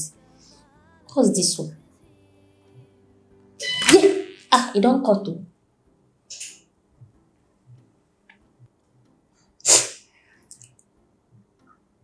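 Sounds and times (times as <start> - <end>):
person sneezing: 9.6 - 10.0
hiss of breath: 9.6 - 10.2.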